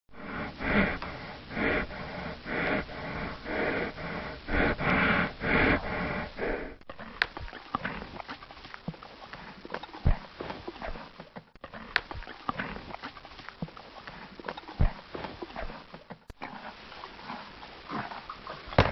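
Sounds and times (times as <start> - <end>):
horse breathing and snorting: 0.1 - 18.9
horse chewing carrot: 0.6 - 18.9.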